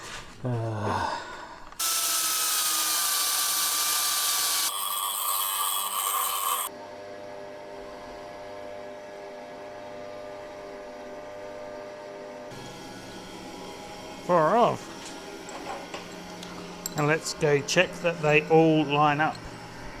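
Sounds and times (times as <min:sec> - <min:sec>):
power tool grinding steel rod: 0:01.8 - 0:06.7.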